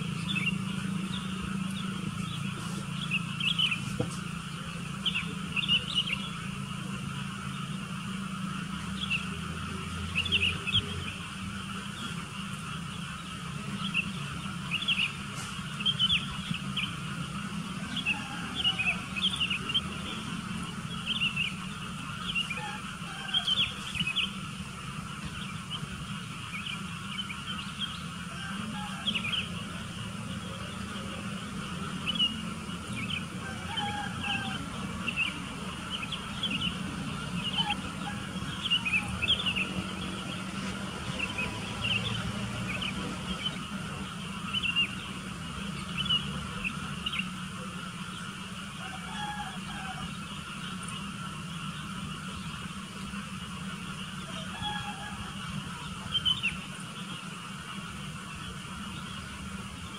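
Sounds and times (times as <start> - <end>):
birds chirping: 0.0 - 59.9
low background hum: 0.0 - 59.9.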